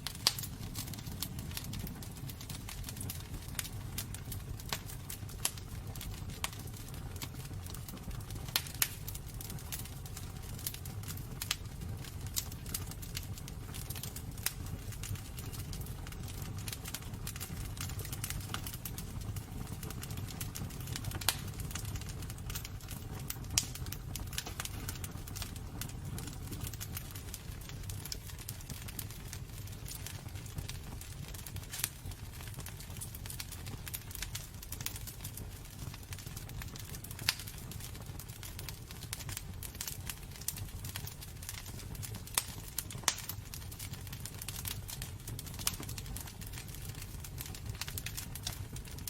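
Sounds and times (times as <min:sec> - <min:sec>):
low rumble of flame: 0:00.0 - 0:49.0
wood fire crackling: 0:00.0 - 0:49.0
sharp pops and snaps: 0:42.3 - 0:43.8.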